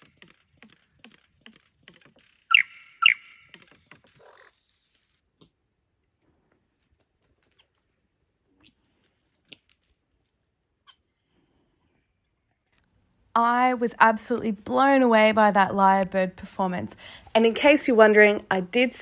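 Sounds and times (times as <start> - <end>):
lyrebird singing clicking notes: 2.5 - 4.2.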